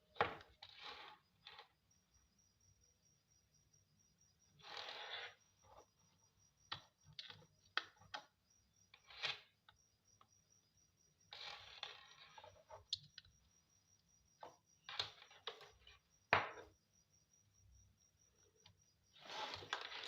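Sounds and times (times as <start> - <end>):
scraping rustle: 19.2 - 20.0.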